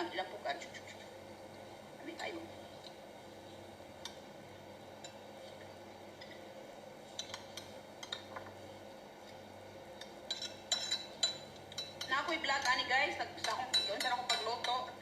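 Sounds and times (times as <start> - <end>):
faint background noise: 0.0 - 15.0
spoon clinking on a plate: 10.0 - 12.8, 13.4 - 14.9.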